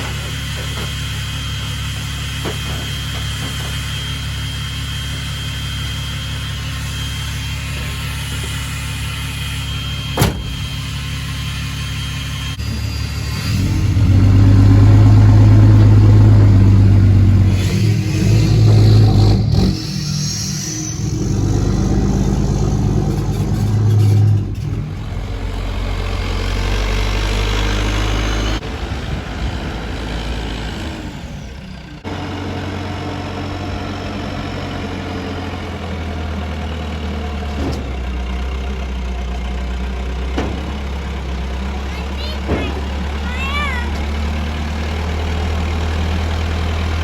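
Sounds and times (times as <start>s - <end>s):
vehicle engine running: 21.3s - 47.0s.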